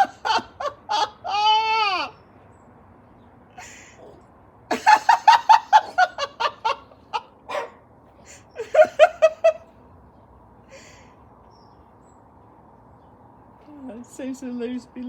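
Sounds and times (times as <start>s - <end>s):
person laughing: 0.0s - 2.1s, 4.7s - 7.3s, 8.3s - 9.7s.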